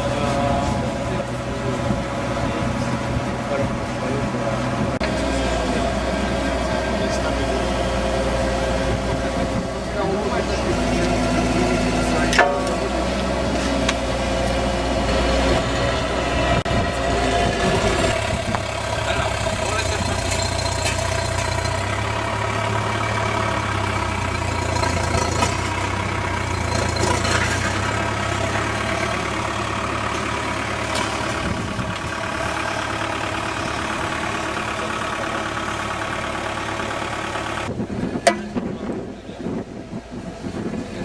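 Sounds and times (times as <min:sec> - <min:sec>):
diesel engine running: 0:00.0 - 0:41.0
sharp knocks: 0:38.2 - 0:38.7.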